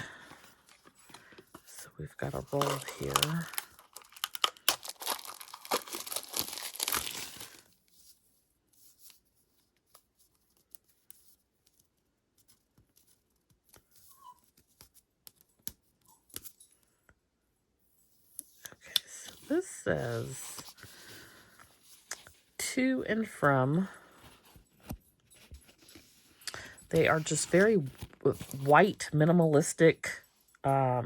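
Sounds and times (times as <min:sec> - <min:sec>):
faint rustles and clicks of handling: 0:00.0 - 0:30.8
packaging crinkling and tearing: 0:02.2 - 0:07.7.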